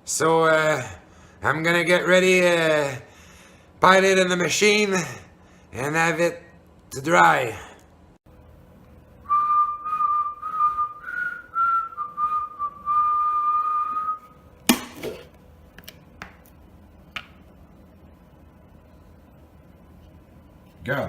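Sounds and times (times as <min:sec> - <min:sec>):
person whistling a tune: 0:09.3 - 0:14.3.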